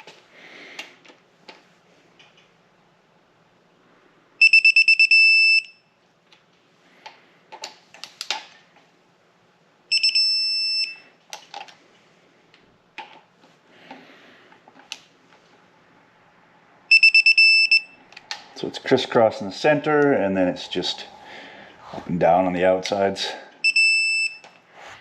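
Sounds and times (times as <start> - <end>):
torque wrench beeping: 4.4 - 5.8, 9.9 - 11.0, 16.9 - 18.0, 23.6 - 24.6.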